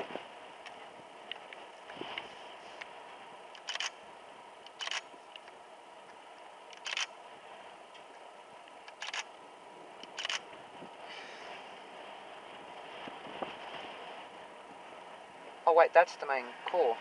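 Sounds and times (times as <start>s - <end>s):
camera shutter clicks: 3.6s - 4.0s, 4.7s - 5.1s, 6.8s - 7.1s, 8.9s - 9.3s, 10.0s - 10.4s.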